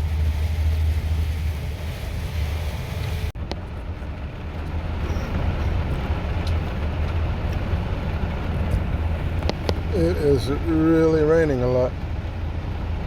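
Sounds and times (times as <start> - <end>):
rain hiss: 0.0 - 3.4
bus engine and road rumble: 0.0 - 13.0.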